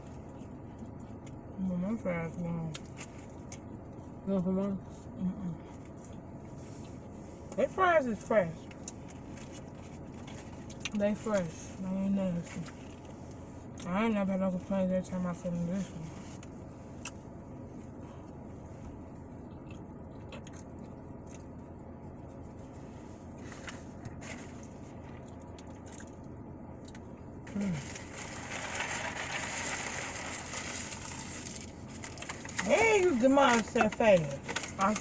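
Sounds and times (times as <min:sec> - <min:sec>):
low background hum: 0:00.0 - 0:35.0
person chewing food: 0:16.4 - 0:28.5.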